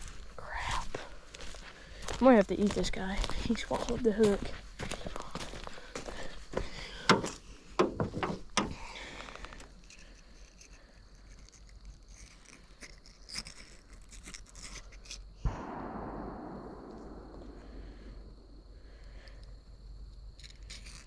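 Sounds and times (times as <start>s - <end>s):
sharp bang: 15.5s - 19.1s.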